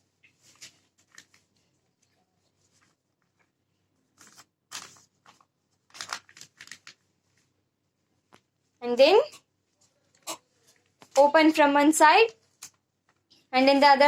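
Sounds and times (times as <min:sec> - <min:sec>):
paper rustling and crinkling: 0:00.3 - 0:07.6.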